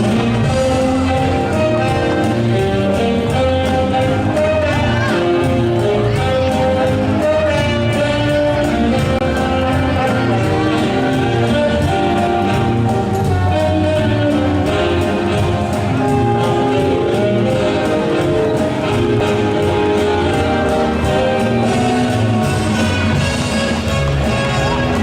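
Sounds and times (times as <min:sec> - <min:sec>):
latin dance music: 0:00.0 - 0:25.0.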